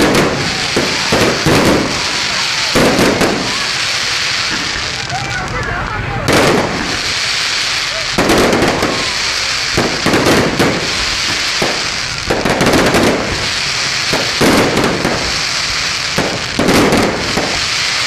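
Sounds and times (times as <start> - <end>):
fireworks crackling and popping: 0.0 - 18.0
high hiss: 6.5 - 18.0.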